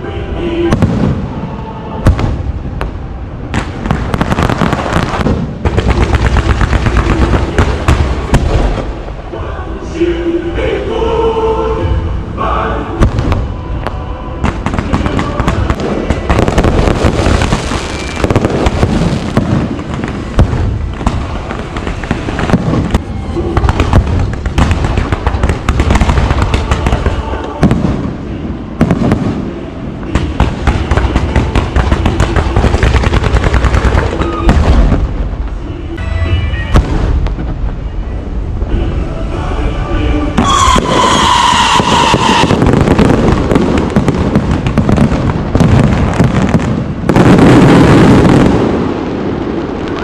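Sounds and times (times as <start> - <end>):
fireworks banging and crackling: 0.6 - 1.4, 2.0 - 9.1, 13.0 - 35.7, 36.3 - 38.2, 40.4 - 50.0
faint music: 20.9 - 40.6.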